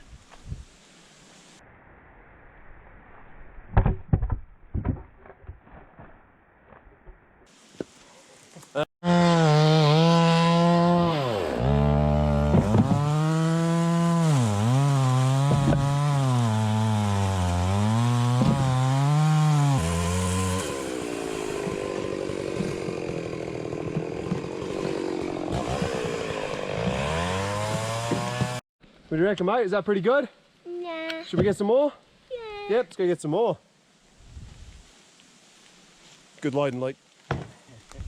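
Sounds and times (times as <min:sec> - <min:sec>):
chainsaw cutting wood: 0:09.0 - 0:28.6.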